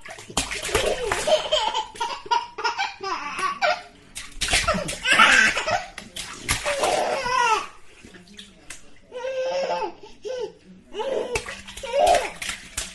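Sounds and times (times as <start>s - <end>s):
bathwater splashing: 0.0s - 9.4s, 11.0s - 12.9s
baby laughing: 0.7s - 3.9s, 4.6s - 6.0s.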